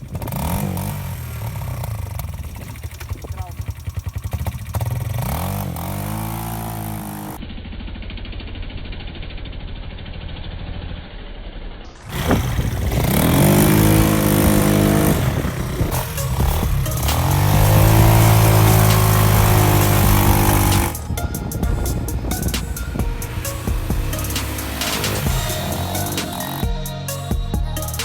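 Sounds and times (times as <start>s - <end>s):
motorbike engine revving hard: 0.0s - 7.4s, 12.0s - 26.8s.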